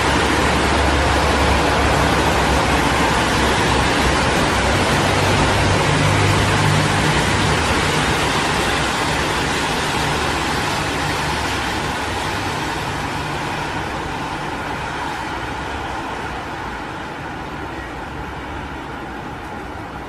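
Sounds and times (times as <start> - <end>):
road traffic passing: 0.0 - 20.0.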